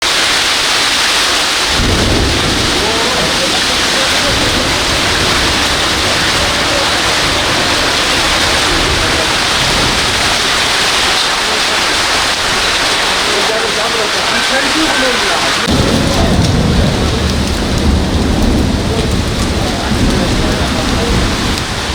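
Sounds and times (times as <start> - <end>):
heavy rain pouring: 0.0 - 21.9
low rumble: 1.7 - 10.9, 15.6 - 21.7.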